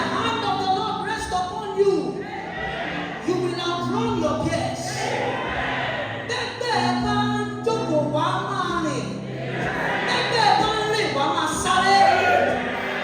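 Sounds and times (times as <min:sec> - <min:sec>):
gospel voices singing: 0:02.1 - 0:03.4, 0:04.5 - 0:07.0, 0:09.3 - 0:13.0.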